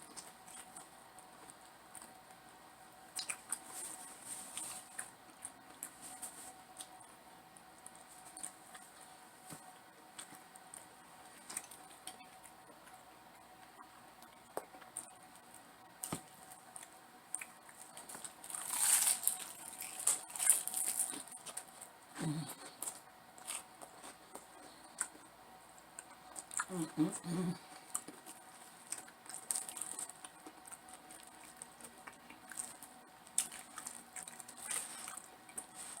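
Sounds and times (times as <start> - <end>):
chewing and mouth clicks: 3.1 - 21.8, 22.4 - 36.0
crunchy rustling: 3.2 - 7.2, 14.6 - 25.3, 26.0 - 36.0.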